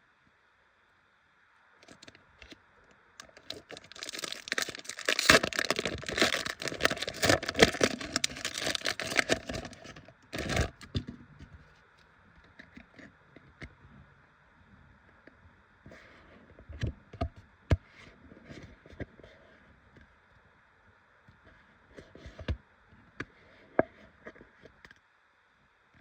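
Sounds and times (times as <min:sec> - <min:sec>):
foil wrapper tearing and crinkling: 0:03.2 - 0:10.8.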